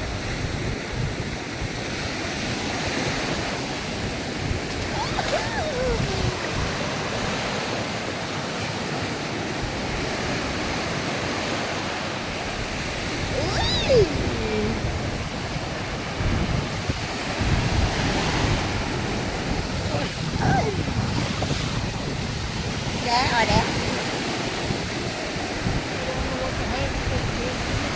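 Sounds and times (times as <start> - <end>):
sea waves washing onto beach: 0.0 - 27.9
wind buffeting microphone: 0.0 - 27.9
short falling cry: 4.8 - 6.7.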